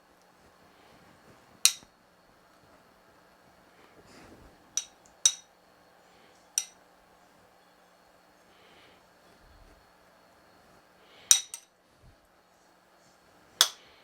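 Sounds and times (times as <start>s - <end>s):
utensil clinking on kitchenware: 1.6s - 1.9s, 4.8s - 5.5s, 6.5s - 6.8s, 11.2s - 11.7s, 13.6s - 13.9s.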